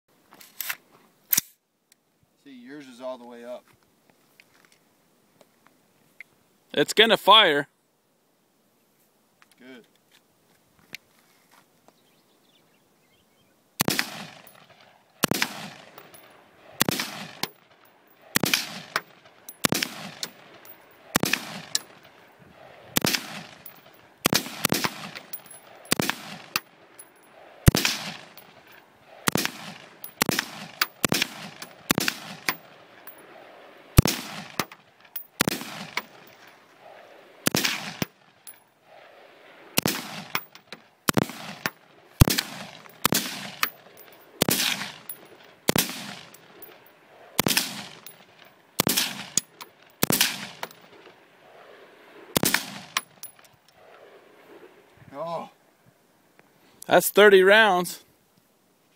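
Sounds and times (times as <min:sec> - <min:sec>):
rifle shots echoing: 0:13.8 - 0:38.3, 0:39.0 - 0:54.2.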